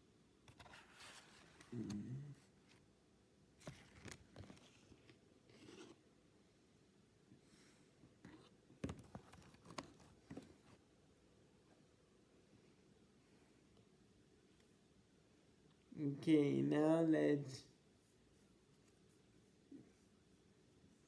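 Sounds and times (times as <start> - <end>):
cards and wrapper rustling: 3.6 - 5.0, 8.8 - 10.7.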